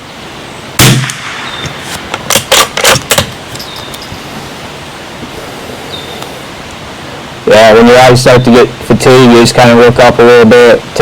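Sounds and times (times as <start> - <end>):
wind noise: 0.0 - 11.0
rifle shot: 0.8 - 3.3.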